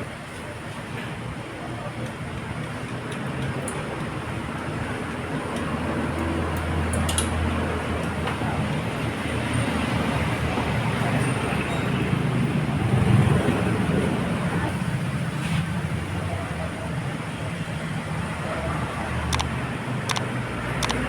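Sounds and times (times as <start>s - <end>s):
road traffic noise: 0.0s - 21.0s
faint clicks: 20.1s - 21.0s.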